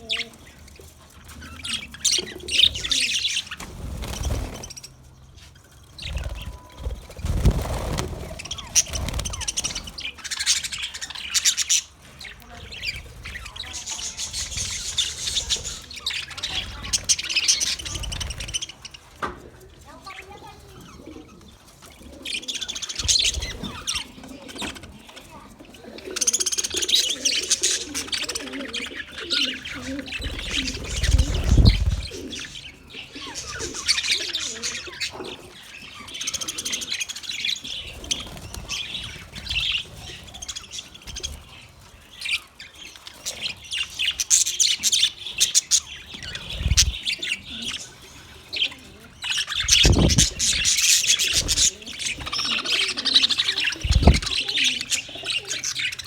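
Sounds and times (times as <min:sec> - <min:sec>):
small birds chirping: 0:00.0 - 0:56.0
low thumps: 0:53.8 - 0:54.4.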